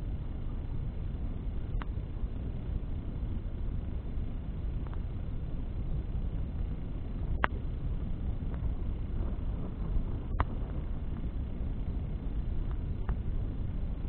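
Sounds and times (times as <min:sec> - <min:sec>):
bonfire crackling: 0:00.0 - 0:14.0
steady low rumble: 0:00.0 - 0:14.0.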